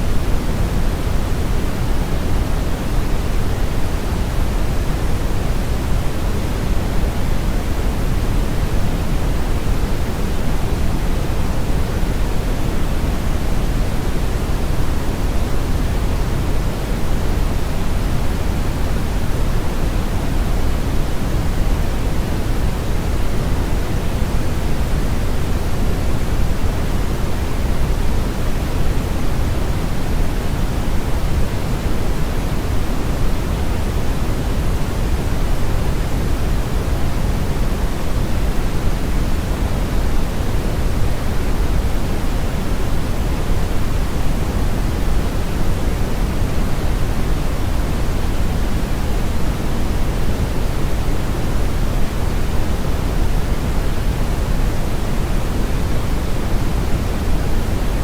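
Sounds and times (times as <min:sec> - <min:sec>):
steady low hiss noise: 0:00.0 - 0:58.0.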